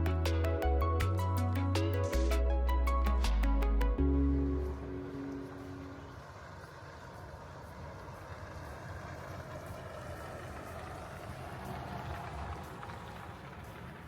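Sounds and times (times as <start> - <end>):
music held notes: 0.0 - 6.6
vehicle rumble: 0.0 - 14.0.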